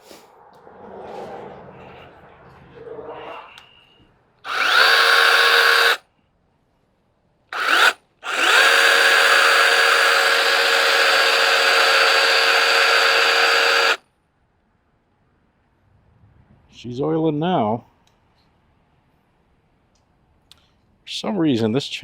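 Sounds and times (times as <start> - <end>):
electric mini chainsaw running: 4.5 - 6.0, 7.5 - 14.0.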